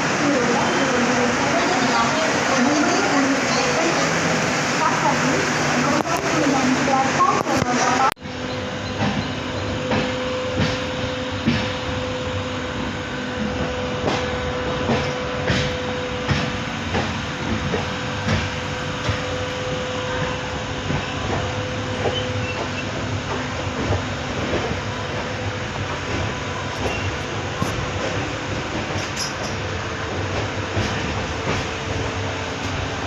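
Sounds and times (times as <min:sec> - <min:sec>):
train rumbling: 0:00.0 - 0:33.0
train wheel clicks on rail joints: 0:26.0 - 0:32.8.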